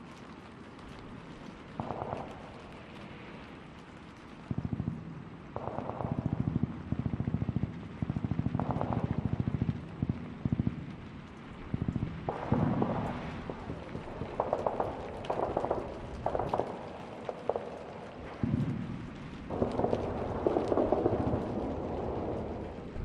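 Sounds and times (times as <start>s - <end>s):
distant automatic gunfire: 5.6s - 10.8s, 11.7s - 18.9s, 19.5s - 23.0s.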